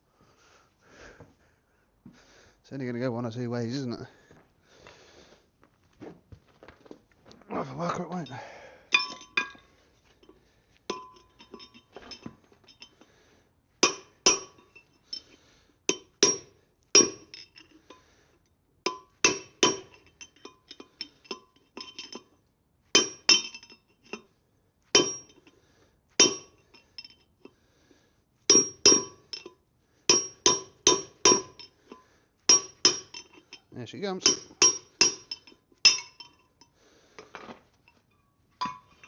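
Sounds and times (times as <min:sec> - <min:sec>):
hammer striking metal: 0:13.8 - 0:14.6, 0:18.9 - 0:20.0, 0:25.0 - 0:25.4, 0:26.2 - 0:26.6, 0:28.5 - 0:29.5, 0:30.1 - 0:31.7, 0:32.5 - 0:33.4, 0:34.2 - 0:36.4.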